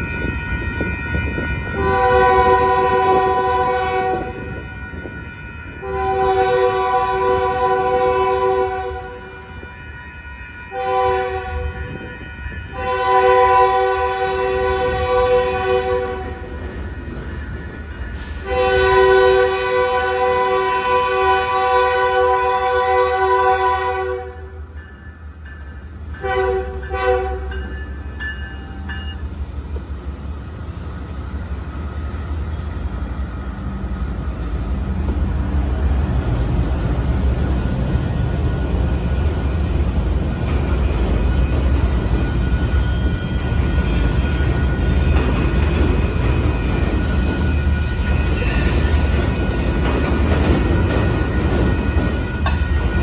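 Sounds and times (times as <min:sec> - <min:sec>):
train rumbling: 0:00.0 - 0:53.0
locomotive air horn blasts: 0:01.7 - 0:04.8, 0:05.8 - 0:10.0, 0:10.7 - 0:12.1, 0:12.7 - 0:16.5, 0:18.2 - 0:24.6, 0:26.2 - 0:27.6.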